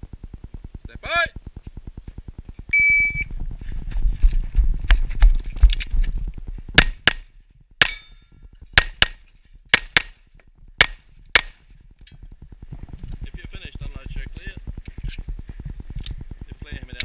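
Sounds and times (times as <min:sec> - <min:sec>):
rustling movement: 0:01.4 - 0:06.8, 0:10.4 - 0:17.0
pistol shots: 0:10.8 - 0:11.6.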